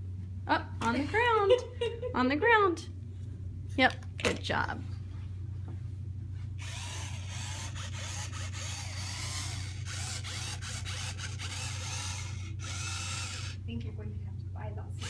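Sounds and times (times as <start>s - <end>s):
toy truck electric motor whirring: 6.6s - 13.6s.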